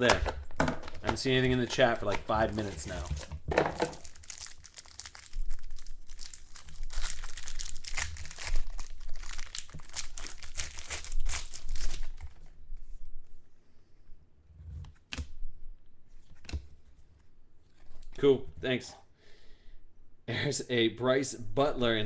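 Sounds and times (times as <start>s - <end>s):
wrappers tearing and crinkling: 1.8s - 12.4s.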